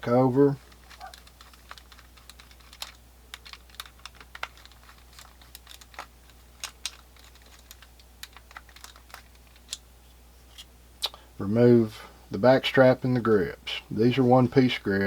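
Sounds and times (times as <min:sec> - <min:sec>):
screwdriver and metal parts clicking: 0:00.6 - 0:09.8.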